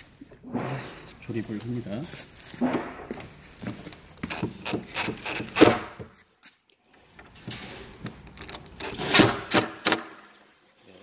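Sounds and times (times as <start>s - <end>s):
small clicks knocks and rubbing: 3.2s - 6.2s.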